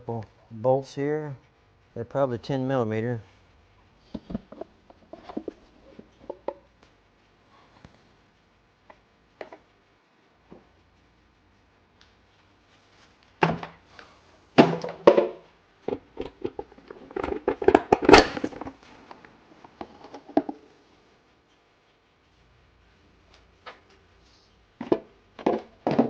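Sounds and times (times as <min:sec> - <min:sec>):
plastic parts knocking and rattling: 0:04.1 - 0:06.7, 0:14.6 - 0:18.8, 0:19.7 - 0:20.7, 0:24.8 - 0:26.0.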